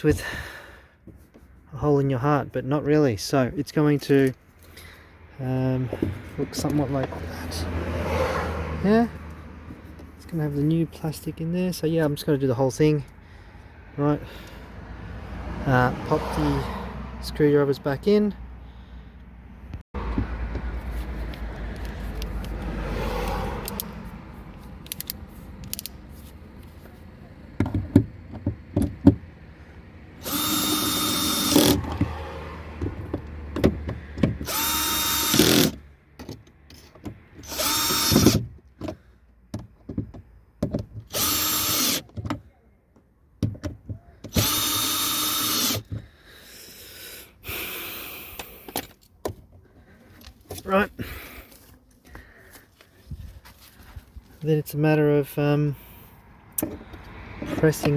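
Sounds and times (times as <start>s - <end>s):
drill clicks: 24.8s - 26.0s, 30.2s - 32.2s, 32.8s - 35.8s, 36.7s - 39.0s, 41.0s - 42.3s, 44.2s - 46.0s
power drill motor whine: 30.2s - 31.8s, 34.4s - 35.7s, 37.4s - 38.4s, 41.1s - 42.0s, 44.3s - 45.8s.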